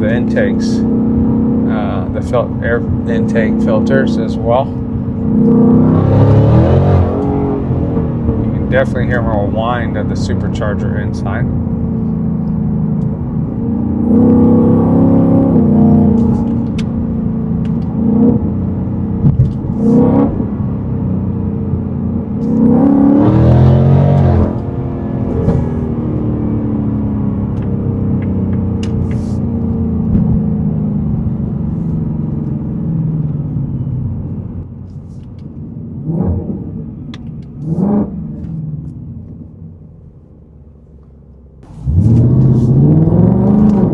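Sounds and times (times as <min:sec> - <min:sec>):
car engine revving: 0:00.0 - 0:35.3, 0:35.9 - 0:39.4, 0:41.6 - 0:43.9
supercharger whine: 0:00.0 - 0:43.9.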